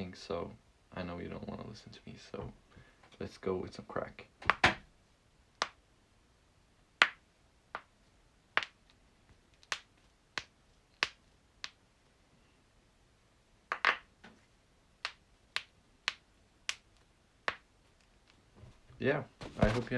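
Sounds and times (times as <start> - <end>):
knuckles cracking: 8.6 - 11.8.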